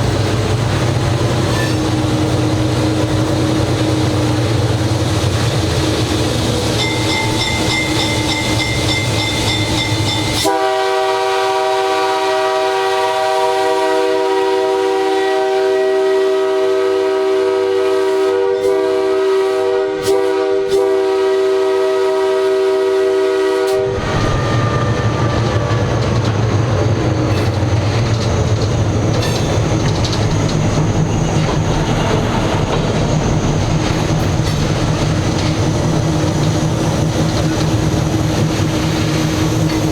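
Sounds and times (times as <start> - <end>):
locomotive engine and wheels rumbling: 0.0 - 19.3, 19.9 - 39.9
locomotive air horn blast: 10.3 - 25.8.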